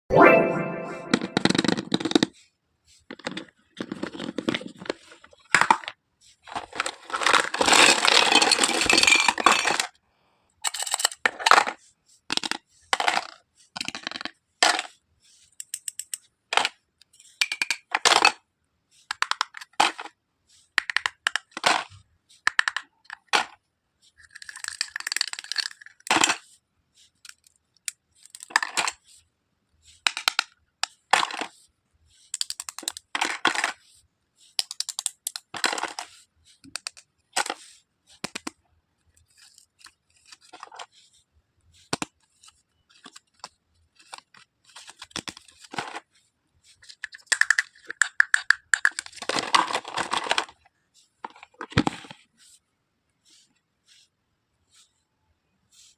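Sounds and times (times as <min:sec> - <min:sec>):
plastic toy pieces clattering: 0:06.5 - 0:09.9, 0:10.7 - 0:14.9, 0:24.2 - 0:26.4, 0:32.3 - 0:33.8, 0:34.6 - 0:36.1, 0:46.8 - 0:50.6.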